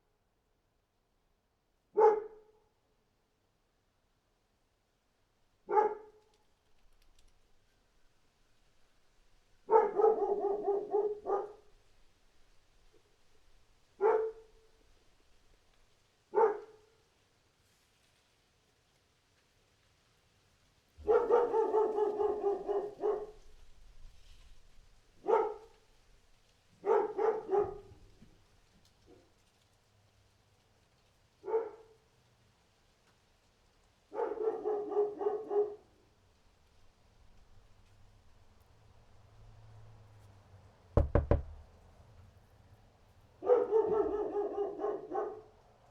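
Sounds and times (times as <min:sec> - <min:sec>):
dog barking: 0:01.9 - 0:02.6, 0:05.7 - 0:06.2, 0:09.6 - 0:11.7, 0:14.0 - 0:14.7, 0:16.3 - 0:17.0, 0:21.0 - 0:23.6, 0:25.2 - 0:25.8, 0:26.8 - 0:28.1, 0:31.4 - 0:32.1, 0:34.1 - 0:36.0, 0:43.4 - 0:45.6.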